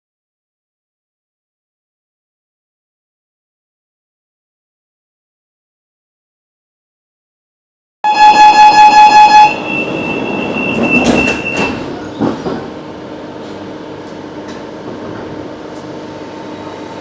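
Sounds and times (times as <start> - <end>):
high steady tone: 8.0 - 11.6
train electrical hum: 8.1 - 17.0.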